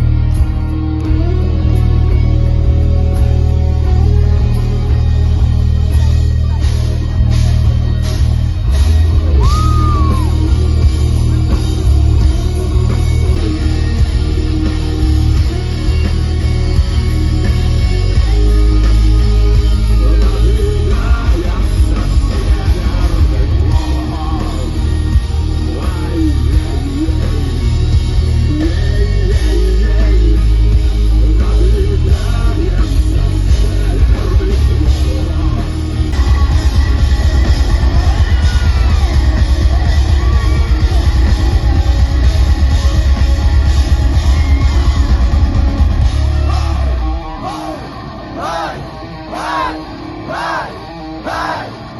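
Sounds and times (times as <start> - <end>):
live rock band playing: 0.0 - 51.9
person singing: 9.2 - 41.8.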